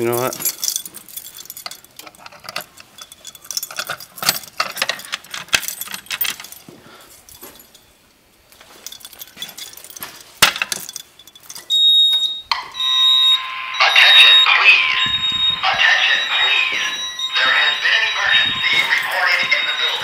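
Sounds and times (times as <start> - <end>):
small hard objects clinking: 8.6 - 11.8.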